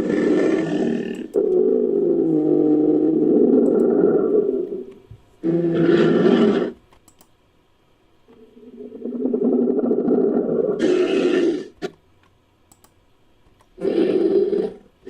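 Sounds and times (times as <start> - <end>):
creature low call: 0.0 - 6.8, 8.4 - 11.9, 13.8 - 14.9.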